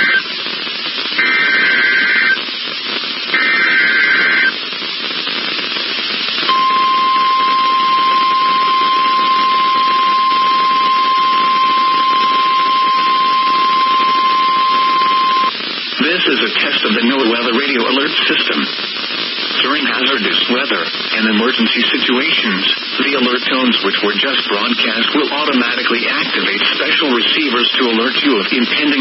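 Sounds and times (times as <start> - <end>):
radio static hiss: 0.0 - 29.0
steady single-pitch alert tone: 6.5 - 15.5.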